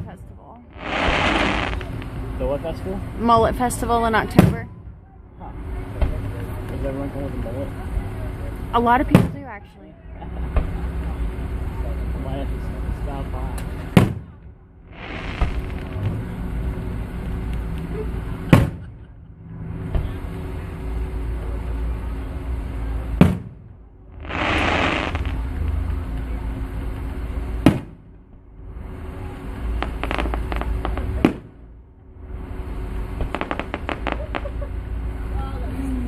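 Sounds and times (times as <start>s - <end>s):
fireworks crackling: 0.0s - 2.7s, 13.6s - 16.2s, 23.1s - 28.0s, 29.6s - 31.6s, 33.0s - 35.1s
low rumble: 0.0s - 6.7s, 10.4s - 36.0s
hissing rush: 0.7s - 2.4s, 14.9s - 16.6s, 24.1s - 25.8s
distant fireworks bangs: 0.8s - 2.4s, 13.9s - 16.2s, 18.4s - 19.0s, 23.1s - 26.0s, 29.6s - 31.6s, 33.0s - 34.7s.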